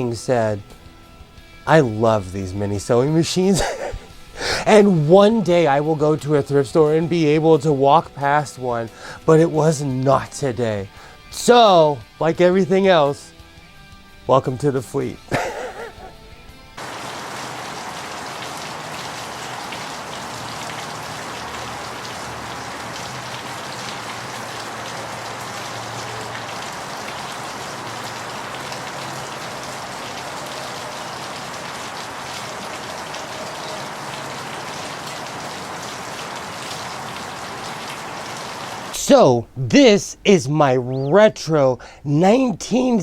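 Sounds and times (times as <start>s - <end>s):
steady rain hiss: 0.0s - 6.5s, 8.9s - 11.2s, 15.3s - 16.1s, 16.8s - 40.6s.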